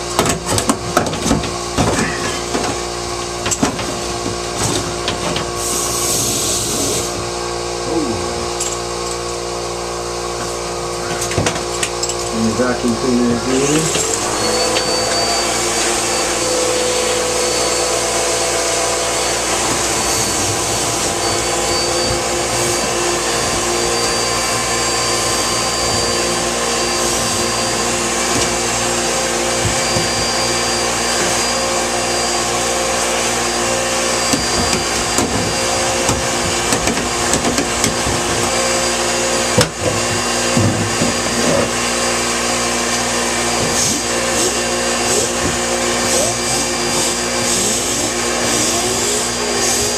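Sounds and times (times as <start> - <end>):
knocks and rattles in duct: 0.0 - 5.6, 11.2 - 11.8, 34.3 - 38.6, 39.5 - 41.7
vacuum cleaner running: 0.0 - 49.9.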